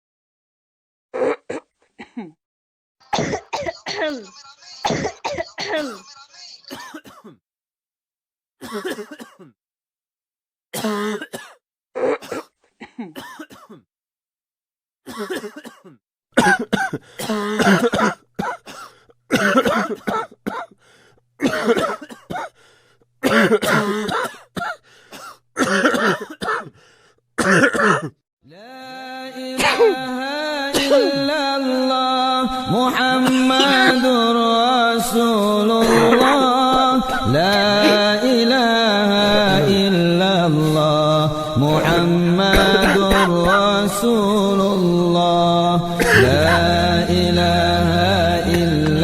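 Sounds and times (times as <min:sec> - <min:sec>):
person coughing: 0:03.1 - 0:07.4, 0:08.6 - 0:09.6, 0:10.8 - 0:13.9, 0:15.1 - 0:20.8, 0:21.4 - 0:22.5, 0:23.2 - 0:26.8, 0:27.4 - 0:28.2, 0:29.6 - 0:30.0, 0:35.8 - 0:38.2, 0:41.2 - 0:44.1, 0:45.9 - 0:47.1.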